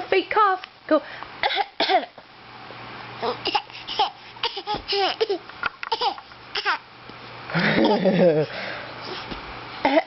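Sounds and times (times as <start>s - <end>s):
baby babbling: 3.2s - 6.8s.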